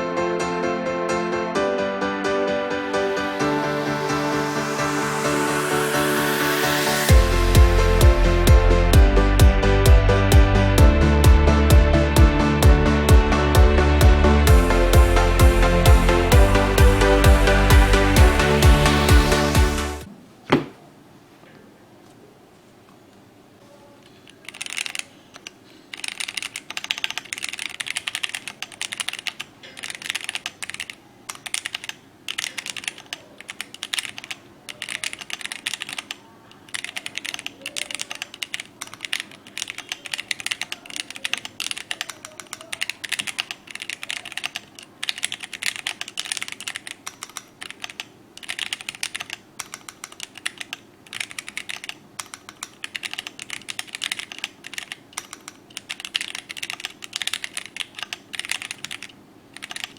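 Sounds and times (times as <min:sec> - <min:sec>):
mechanical keyboard key clacks: 0:24.3 - 0:59.9.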